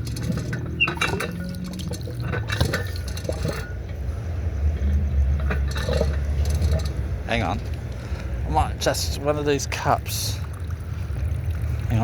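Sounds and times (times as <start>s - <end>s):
water splashing and trickling: 0.0s - 4.0s, 5.2s - 12.0s
metallic clinks and clatters: 5.4s - 7.0s.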